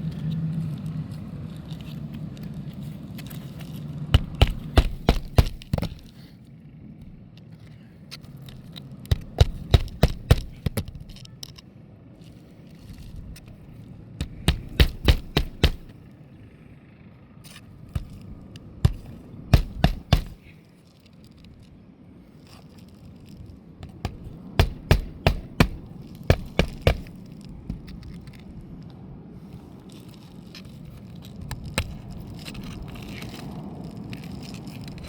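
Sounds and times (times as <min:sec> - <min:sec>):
hammer driving nails: 0:04.2 - 0:06.1, 0:08.7 - 0:11.2, 0:14.2 - 0:15.9, 0:18.0 - 0:20.5, 0:23.8 - 0:28.0, 0:31.7 - 0:32.0.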